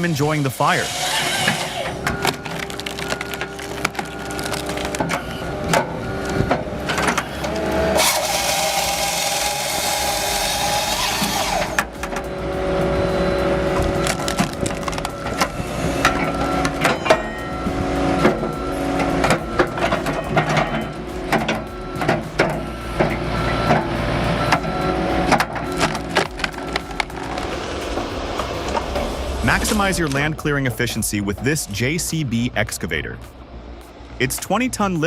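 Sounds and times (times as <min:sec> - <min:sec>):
engine and hydraulics running: 0:00.0 - 0:35.0
wood cracking and splitting: 0:01.3 - 0:11.9, 0:13.8 - 0:17.0, 0:25.3 - 0:28.9.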